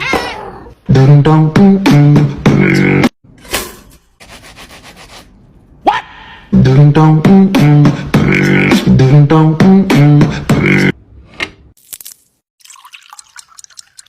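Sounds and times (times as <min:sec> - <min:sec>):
vocal music with beatboxing: 0:00.9 - 0:03.2, 0:06.5 - 0:11.0.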